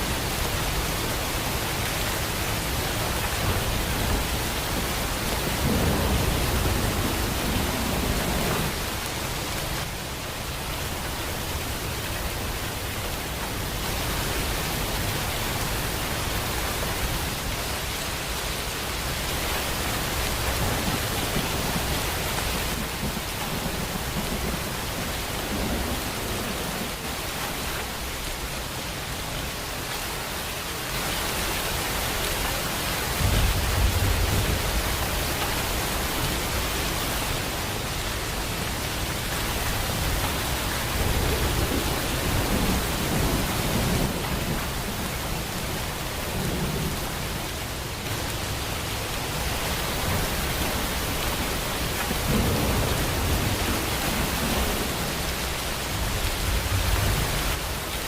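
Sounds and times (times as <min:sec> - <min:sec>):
heavy rain: 0:00.0 - 0:58.0
thunder rumble: 0:00.2 - 0:09.8, 0:33.1 - 0:37.5, 0:49.4 - 0:57.8.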